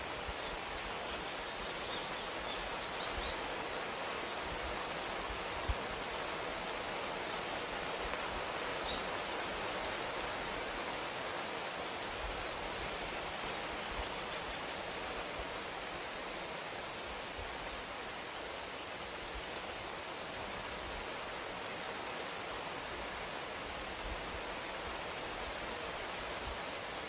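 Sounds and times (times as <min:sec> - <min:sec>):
rain falling: 0:00.0 - 0:27.0
faint raindrop ticks: 0:08.0 - 0:09.3, 0:13.9 - 0:15.0, 0:17.4 - 0:18.3, 0:19.1 - 0:20.8, 0:23.5 - 0:24.6.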